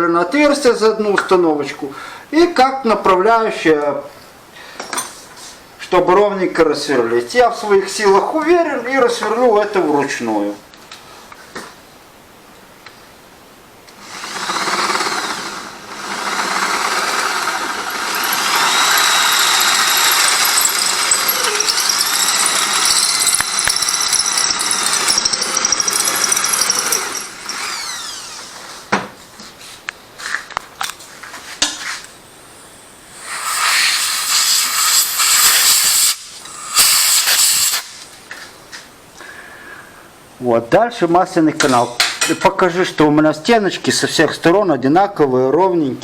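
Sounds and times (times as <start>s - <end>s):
power drill drilling metal: 14.0s - 28.7s, 33.1s - 37.9s.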